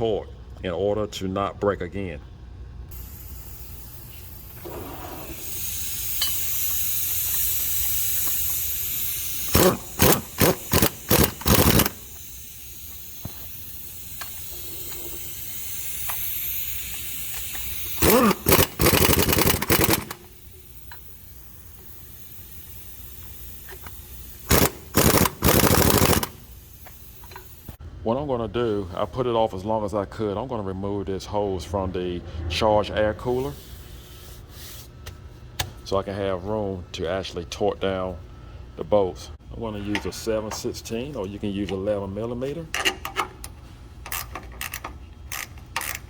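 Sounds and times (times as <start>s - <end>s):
steady hiss: 2.9s - 27.8s
impact gun rattling: 9.5s - 12.0s, 18.0s - 20.3s, 24.5s - 26.4s.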